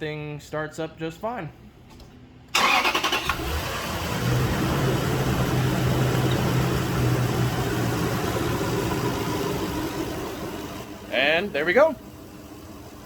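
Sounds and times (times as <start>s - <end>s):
car engine running: 2.6s - 13.0s.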